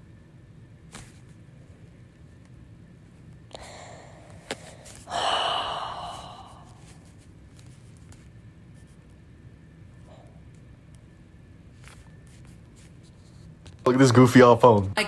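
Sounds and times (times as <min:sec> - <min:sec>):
person sighing: 0:03.6 - 0:06.9.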